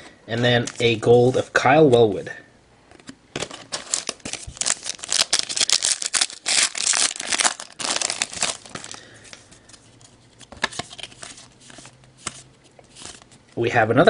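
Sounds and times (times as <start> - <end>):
plastic wrapper tearing and crinkling: 3.4 - 9.4.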